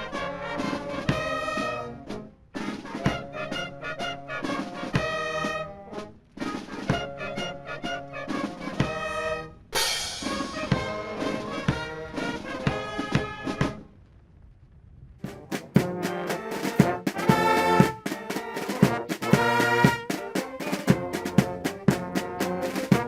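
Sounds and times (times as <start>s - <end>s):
brass band music: 0.0s - 13.8s, 15.2s - 23.0s
cymbal crash: 9.8s - 10.8s.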